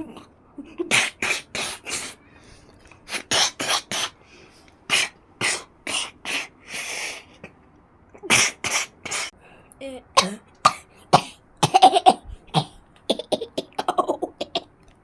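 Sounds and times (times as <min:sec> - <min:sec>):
person coughing: 0:10.2 - 0:14.7.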